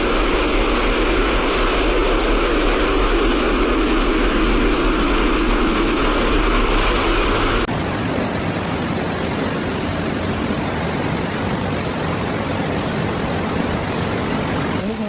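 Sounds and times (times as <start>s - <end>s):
rushing floodwater: 7.6s - 15.0s.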